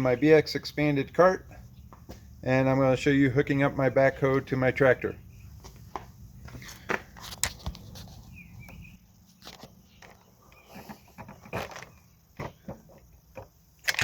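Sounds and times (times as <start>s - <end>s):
bird chirp: 0.0s - 2.4s, 3.0s - 6.9s, 7.8s - 13.0s
light knocks and shuffling: 5.5s - 13.6s.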